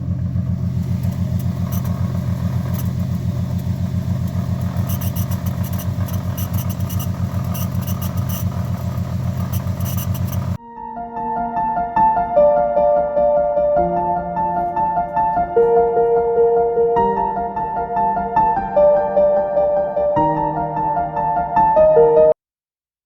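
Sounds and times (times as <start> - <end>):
car engine running: 0.0 - 10.6
light fast tapping: 0.9 - 10.6.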